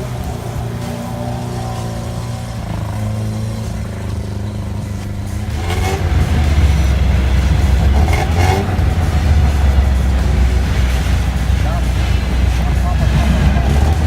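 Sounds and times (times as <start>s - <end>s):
car engine running under load: 0.0s - 14.0s.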